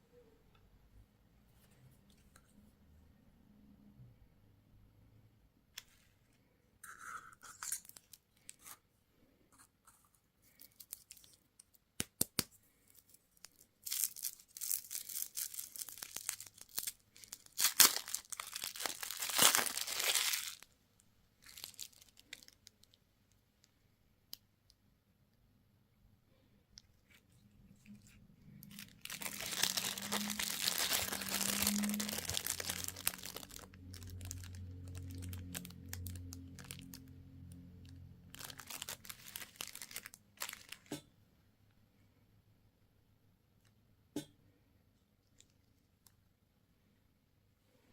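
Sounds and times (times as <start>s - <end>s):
plastic packaging tearing and crinkling: 7.4s - 8.7s, 10.5s - 11.8s, 12.9s - 20.7s, 21.4s - 23.0s, 27.9s - 40.9s.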